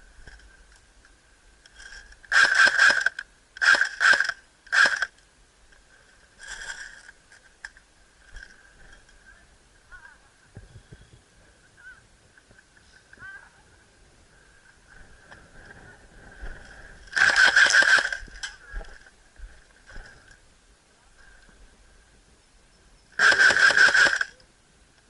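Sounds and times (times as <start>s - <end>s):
airsoft gun bursts: 2.3s - 5.1s, 17.1s - 18.2s, 23.2s - 24.4s.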